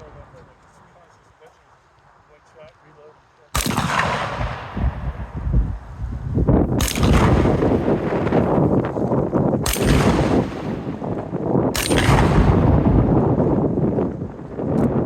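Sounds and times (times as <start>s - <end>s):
shotgun blasts: 3.5s - 5.4s, 6.7s - 8.8s, 9.6s - 13.4s
low rumbling noise: 3.6s - 14.7s.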